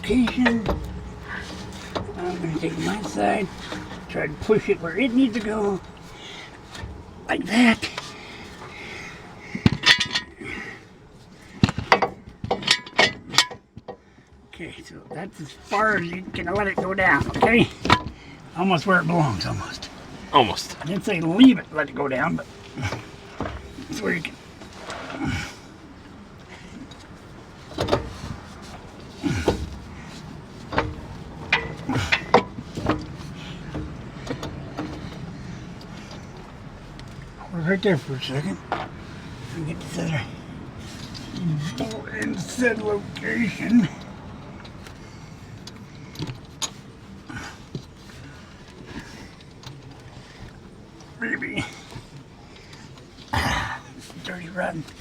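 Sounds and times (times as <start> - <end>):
steady low hum: 0.0 - 54.9
metal-on-metal clinks and knocks: 9.5 - 10.4, 11.6 - 14.0, 30.6 - 37.2.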